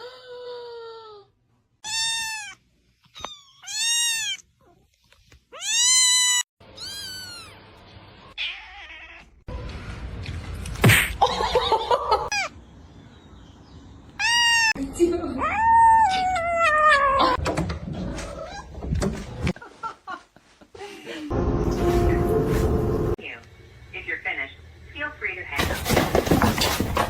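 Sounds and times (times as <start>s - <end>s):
cat meowing loudly: 1.8s - 2.6s, 5.5s - 7.5s, 8.3s - 9.3s, 14.2s - 14.8s.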